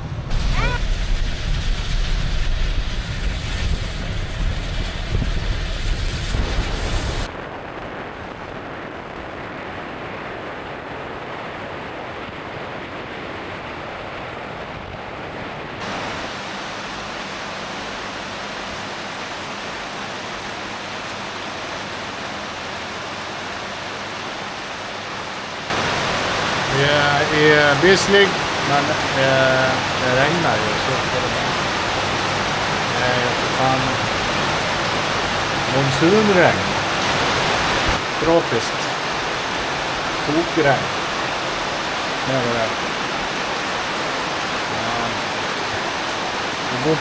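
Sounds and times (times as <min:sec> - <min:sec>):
car driving: 0:00.0 - 0:07.3
wind noise: 0:00.0 - 0:16.4
heavy rain: 0:00.0 - 0:47.0.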